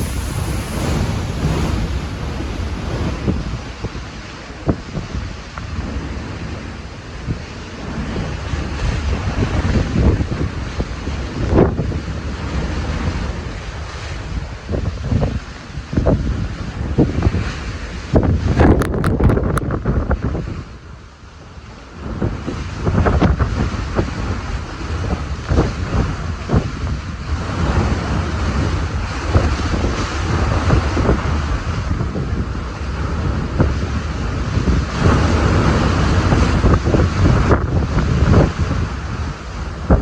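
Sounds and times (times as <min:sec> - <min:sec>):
wind thumping microphone: 0:00.0 - 0:07.4, 0:18.2 - 0:20.5, 0:22.0 - 0:40.0
strong wind gusting: 0:00.0 - 0:13.6, 0:18.2 - 0:20.4, 0:22.0 - 0:40.0.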